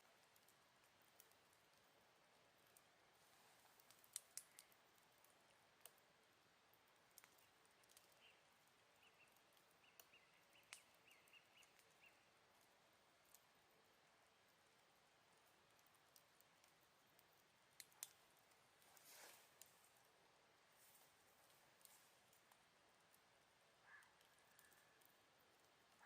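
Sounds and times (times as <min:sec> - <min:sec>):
campfire crackling and popping: 0:00.0 - 0:19.9, 0:20.9 - 0:26.0.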